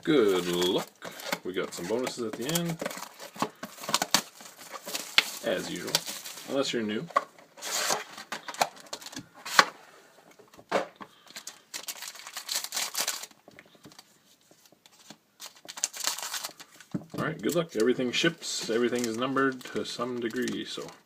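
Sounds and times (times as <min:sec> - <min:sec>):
wrapper tearing and crinkling: 0:00.2 - 0:06.7, 0:11.3 - 0:13.4, 0:14.9 - 0:16.9.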